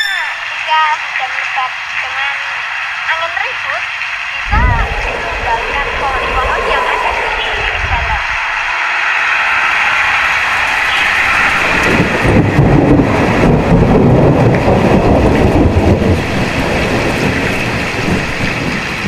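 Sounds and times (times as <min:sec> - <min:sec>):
heavy rain hiss: 0:00.4 - 0:19.0
wind buffeting microphone: 0:04.1 - 0:19.0.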